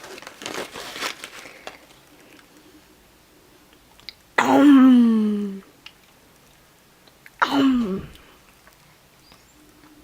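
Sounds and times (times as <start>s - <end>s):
snack pouch crinkling: 0.0s - 2.7s.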